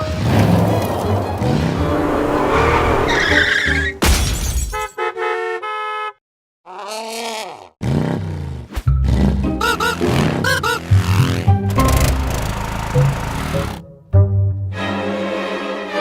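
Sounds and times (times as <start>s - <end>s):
falling tone: 0.5s - 4.1s
cartoon crash: 1.8s - 4.9s
cartoon tyre skid squeal: 1.9s - 4.1s
car horn toots: 4.9s - 6.2s
music: 8.9s - 16.0s.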